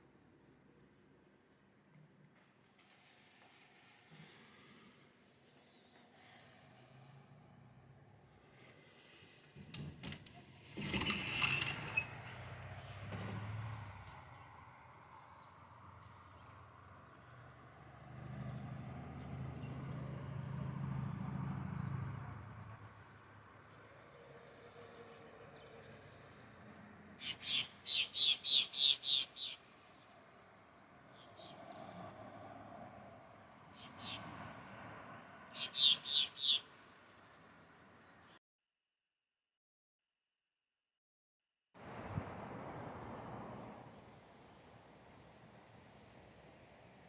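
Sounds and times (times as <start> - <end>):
insect drone: 6.1 - 9.5, 10.8 - 38.4, 41.8 - 47.0
distant bird twittering: 13.0 - 38.4.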